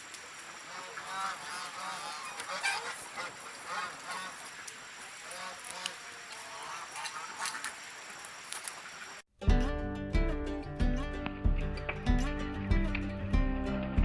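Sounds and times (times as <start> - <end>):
geese honking: 0.5 - 8.0.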